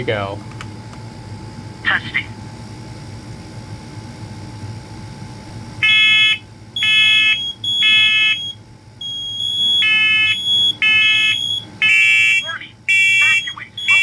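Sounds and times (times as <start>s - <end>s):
smoke alarm shrill beeps: 5.8s - 14.0s.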